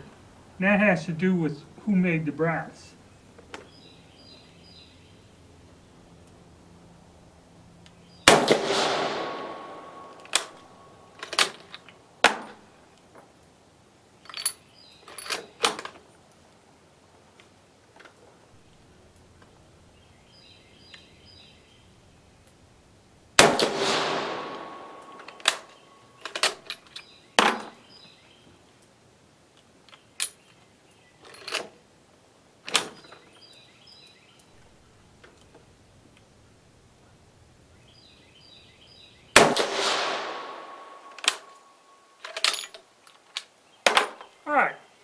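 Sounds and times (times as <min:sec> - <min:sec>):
rifle shot ringing out: 0:08.2 - 0:11.0, 0:23.4 - 0:25.8, 0:39.4 - 0:41.6.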